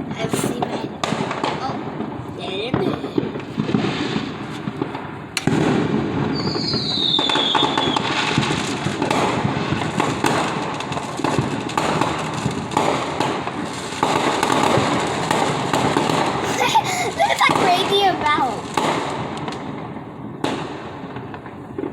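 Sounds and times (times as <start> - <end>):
fireworks bangs and crackles: 0.0 - 21.9
firework whistle falling in pitch: 6.3 - 8.0.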